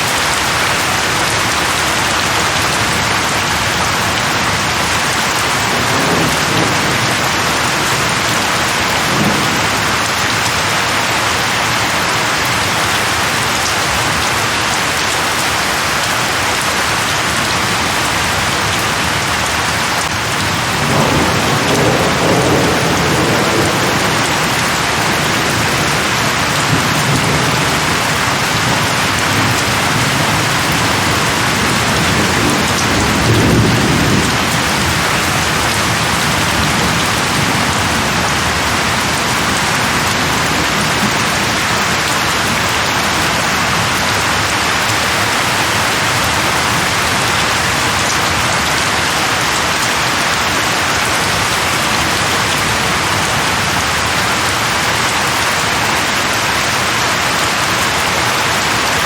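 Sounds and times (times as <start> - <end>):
heavy rain on leaves: 0.0 - 59.0
distant thunder rolling: 5.1 - 10.2, 20.3 - 42.0.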